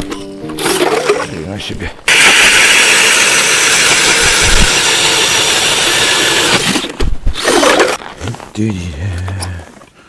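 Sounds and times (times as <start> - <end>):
motor running loudly: 2.1 - 6.9.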